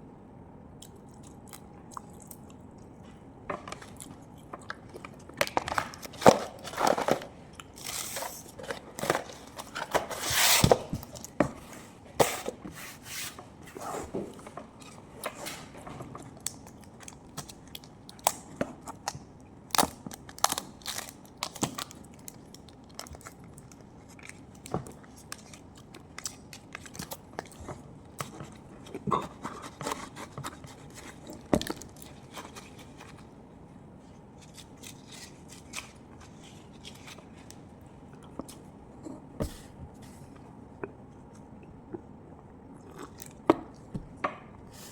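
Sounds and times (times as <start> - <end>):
crunching and chewing: 0.8 - 10.0, 16.0 - 33.3, 34.0 - 39.3, 42.7 - 44.0.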